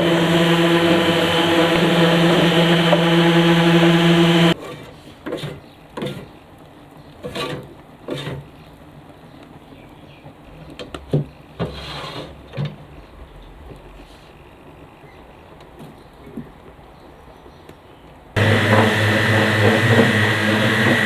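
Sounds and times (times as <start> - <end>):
orbital sanders humming: 0.0 - 4.6, 18.4 - 21.0.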